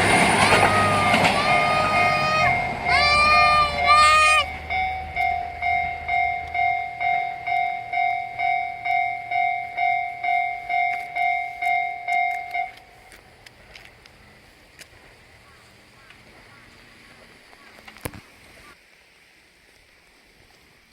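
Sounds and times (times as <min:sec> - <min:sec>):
level crossing warning bell: 0:00.0 - 0:13.2.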